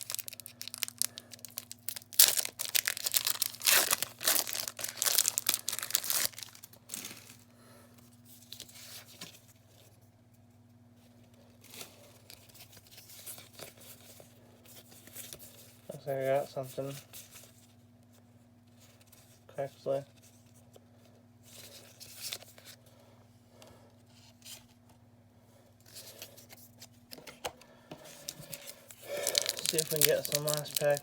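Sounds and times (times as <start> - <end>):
cards rustling: 0.0 - 7.4, 25.9 - 31.0
foil wrapper tearing and crinkling: 0.0 - 7.4, 28.2 - 31.0.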